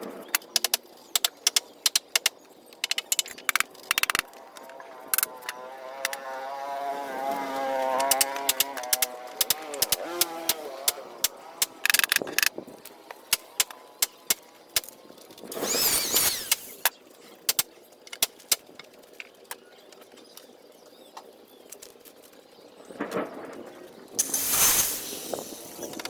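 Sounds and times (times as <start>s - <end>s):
sharp taps and knocks: 0.3s - 6.2s.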